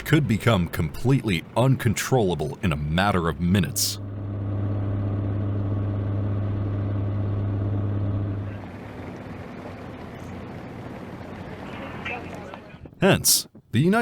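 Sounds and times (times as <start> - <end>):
vehicle engine running: 0.0 - 13.2.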